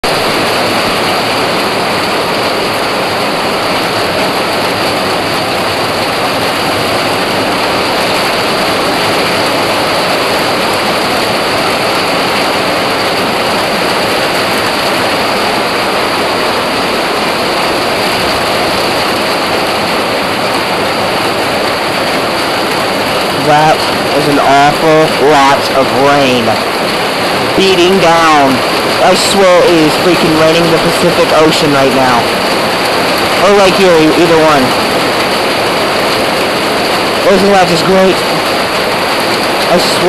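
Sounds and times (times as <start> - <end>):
heavy rain: 0.0 - 40.0.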